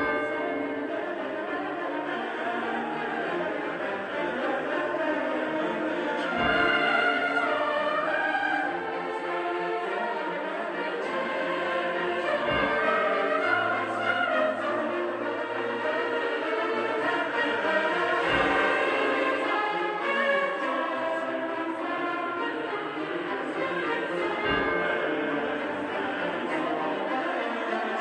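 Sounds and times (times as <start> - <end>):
church bell tolling: 0.0 - 4.1, 6.2 - 8.9, 12.3 - 22.4, 24.1 - 28.0.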